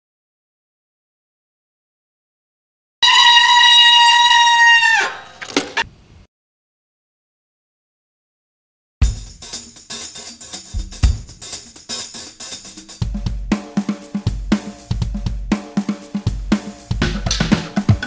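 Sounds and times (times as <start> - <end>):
kick drum and bass line: 9.0 - 9.8, 10.7 - 11.7, 13.0 - 18.0
drum kit with cymbals: 9.0 - 18.0.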